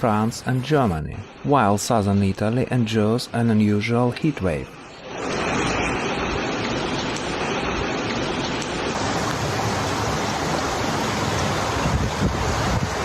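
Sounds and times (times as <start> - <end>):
floodwater rushing: 4.2 - 13.0.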